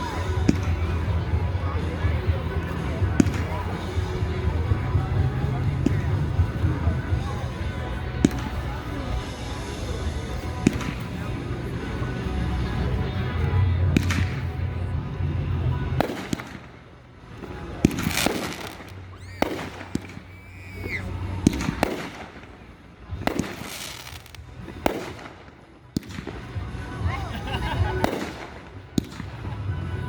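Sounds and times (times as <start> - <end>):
firework crackling: 15.9 - 29.8
firework bangs: 16.0 - 16.8, 17.8 - 26.7, 27.9 - 29.6
firework whistle: 18.0 - 21.1.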